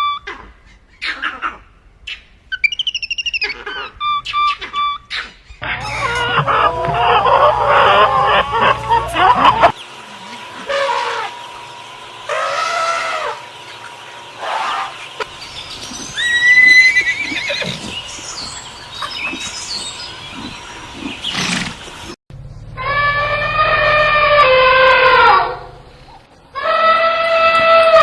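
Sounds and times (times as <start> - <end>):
horse neighing and whinnying: 16.2 - 17.9.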